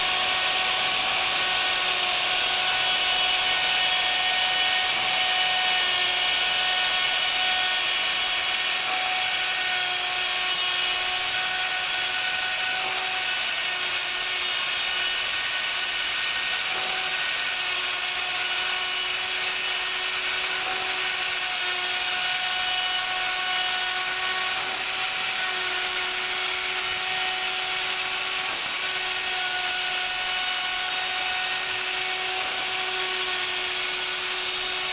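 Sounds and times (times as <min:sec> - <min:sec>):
wood router whining: 0:00.0 - 0:34.9.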